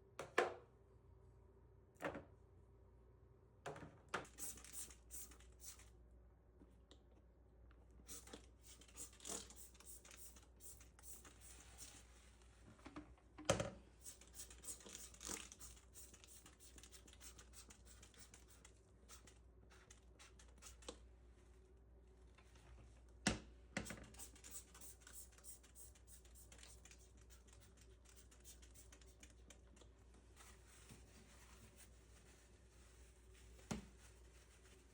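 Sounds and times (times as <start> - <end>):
faint scraping and rubbing: 30.2 - 34.9.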